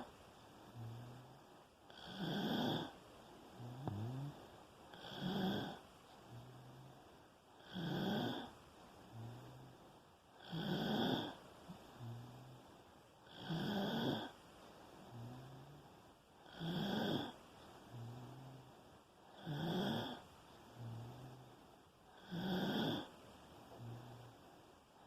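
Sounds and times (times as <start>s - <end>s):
soft low-pitched hum: 0.0s - 2.0s, 2.9s - 5.0s, 5.7s - 7.6s, 11.4s - 13.3s, 14.3s - 16.5s, 17.3s - 19.4s, 23.1s - 25.0s
person snoring: 0.7s - 3.0s, 3.6s - 7.0s, 7.6s - 8.5s, 10.4s - 12.6s, 13.3s - 14.4s, 15.0s - 18.7s, 19.3s - 21.5s, 22.2s - 23.1s, 23.7s - 24.4s.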